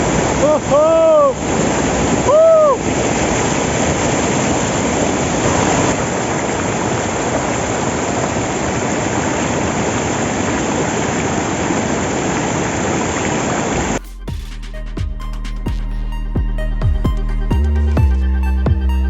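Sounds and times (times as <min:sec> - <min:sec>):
waterfall and stream rushing: 0:00.0 - 0:14.0.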